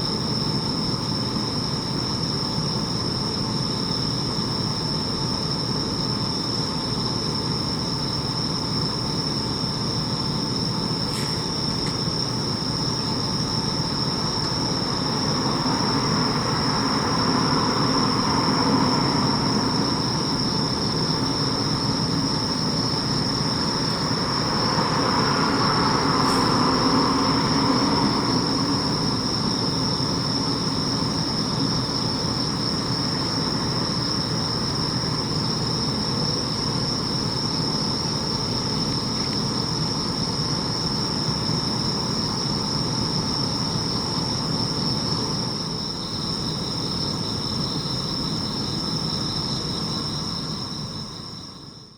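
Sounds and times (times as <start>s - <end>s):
crickets trilling: 0.0s - 51.9s.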